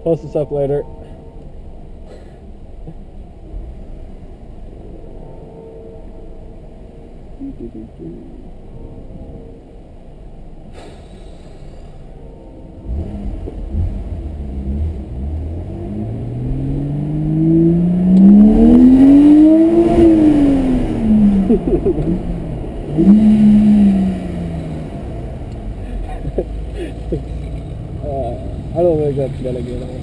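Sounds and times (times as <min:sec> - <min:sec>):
car engine accelerating hard: 0:12.8 - 0:30.0
exhaust crackles: 0:12.8 - 0:30.0.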